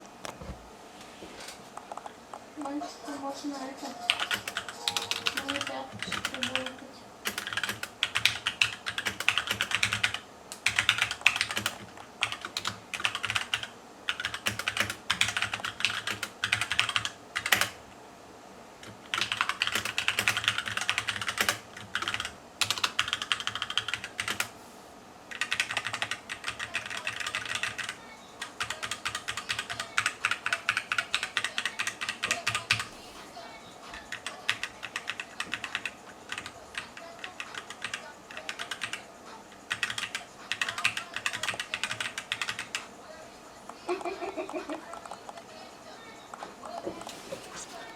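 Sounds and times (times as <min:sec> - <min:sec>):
fast mechanical keyboard typing: 0:04.1 - 0:17.8, 0:18.8 - 0:24.5, 0:25.3 - 0:32.9, 0:34.0 - 0:39.0, 0:39.7 - 0:42.9.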